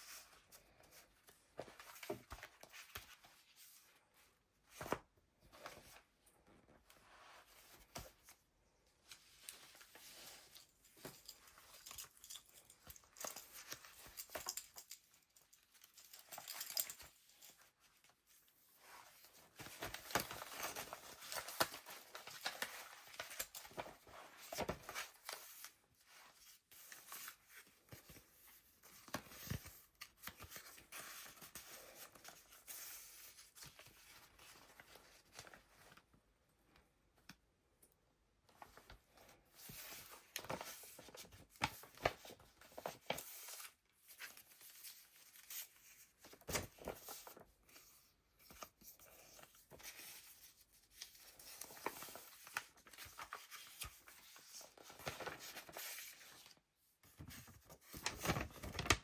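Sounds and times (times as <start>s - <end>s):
paper pages rustling: 15.7s - 36.1s, 38.6s - 59.0s.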